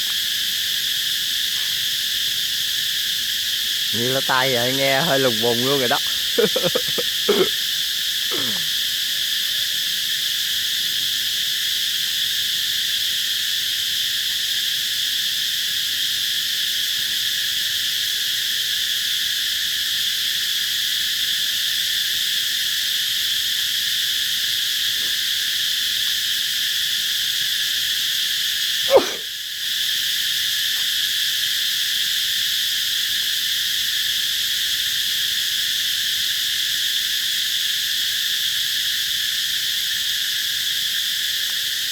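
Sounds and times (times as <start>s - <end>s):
loud cicada chorus: 0.0s - 41.9s.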